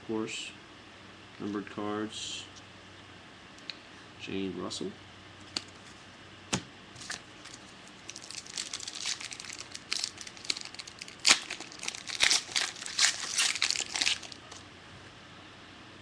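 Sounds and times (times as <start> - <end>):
plastic wrapper crinkling and tearing: 7.0 - 14.6.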